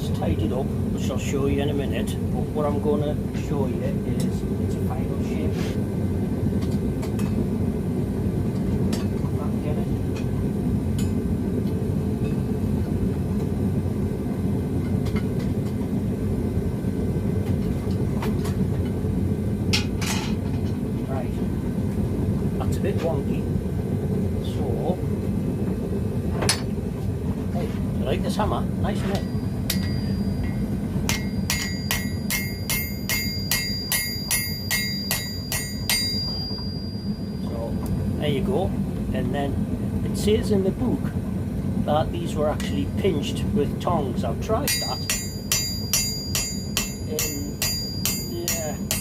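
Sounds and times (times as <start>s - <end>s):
gas forge rumbling: 0.0s - 49.0s
hammer striking iron on anvil: 29.1s - 37.2s, 44.7s - 49.0s.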